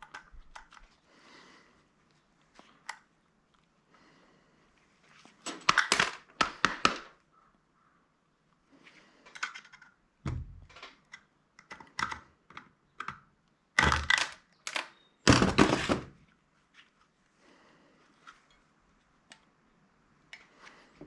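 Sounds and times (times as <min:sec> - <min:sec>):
plastic casing clicks and clatter: 0:00.0 - 0:00.9, 0:05.5 - 0:07.0, 0:09.3 - 0:10.0, 0:10.6 - 0:16.0.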